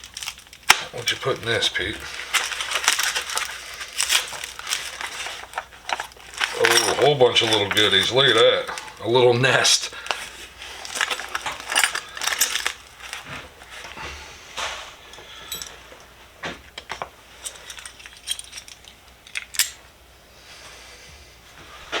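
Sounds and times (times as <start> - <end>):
metal hand tools clinking: 1.0 - 13.8, 15.1 - 15.8, 16.8 - 19.8.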